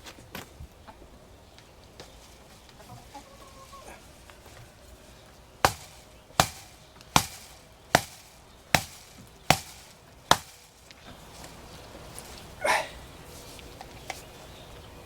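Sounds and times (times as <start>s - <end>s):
hand tool striking something solid: 5.6s - 10.6s.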